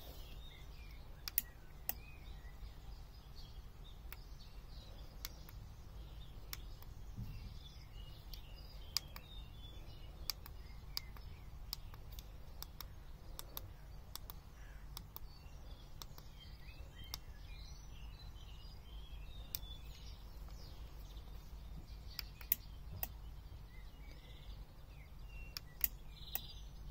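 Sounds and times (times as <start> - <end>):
small birds chirping: 0.0 - 26.9
steady low hum: 0.0 - 26.9
sharp ticks: 0.9 - 2.1, 4.0 - 5.6, 6.4 - 7.0, 8.3 - 9.4, 10.1 - 15.3, 16.0 - 16.3, 22.1 - 23.2, 25.5 - 26.6.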